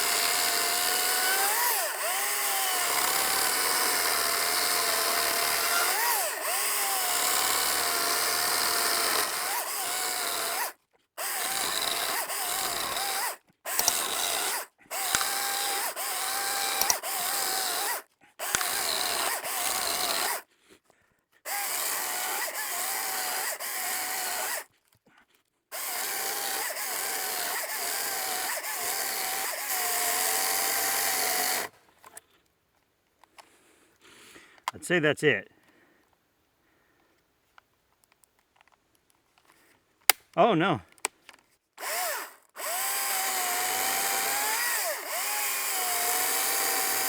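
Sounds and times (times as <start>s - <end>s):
chainsaw cutting wood: 0.0s - 20.5s, 21.5s - 24.7s, 25.7s - 32.2s, 41.8s - 47.0s.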